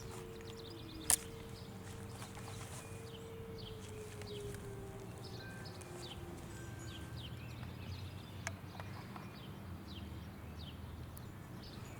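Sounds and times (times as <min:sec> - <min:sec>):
warning siren winding down: 0:00.0 - 0:07.7
birds chirping: 0:00.0 - 0:11.9.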